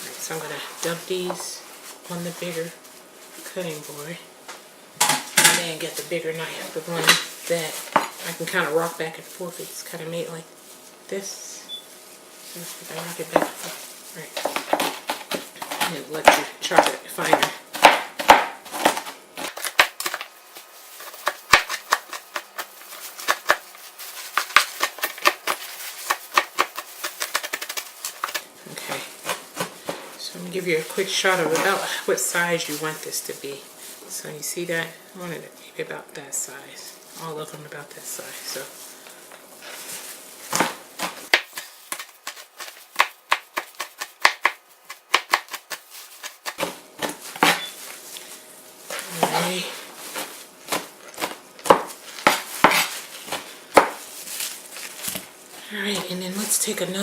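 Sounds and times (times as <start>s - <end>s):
knife chopping on cutting board: 14.4s - 20.2s, 40.5s - 47.7s, 50.7s - 53.0s, 53.7s - 54.0s.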